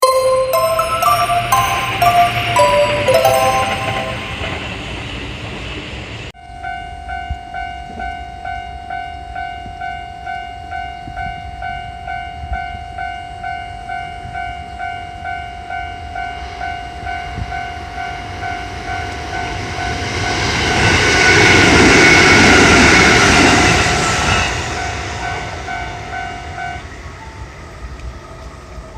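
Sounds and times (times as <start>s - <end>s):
railroad crossing alarm ringing: 0.0s - 5.6s
electric train passing: 0.0s - 6.3s, 16.4s - 28.0s.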